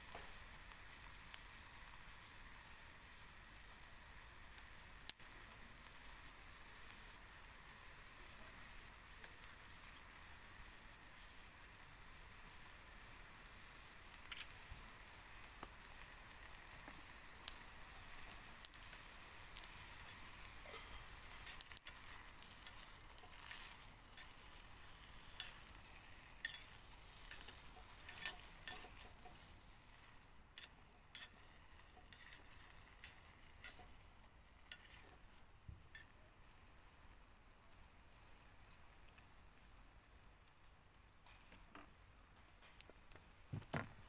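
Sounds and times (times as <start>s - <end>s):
low steady hiss: 0.0s - 44.0s
utensils clinking on pots and dishes: 19.9s - 24.6s, 26.4s - 29.5s, 30.6s - 34.0s.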